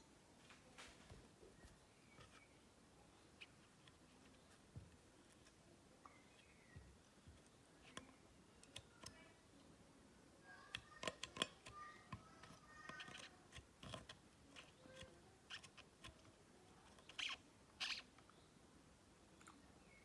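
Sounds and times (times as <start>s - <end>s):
faint handling clicks and taps: 3.4s - 9.7s, 10.7s - 17.2s.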